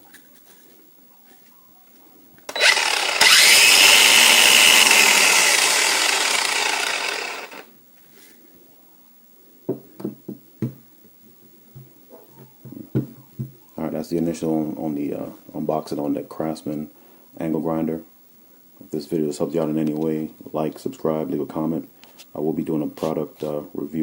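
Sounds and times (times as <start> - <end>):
angle grinder spinning: 2.5 - 7.7.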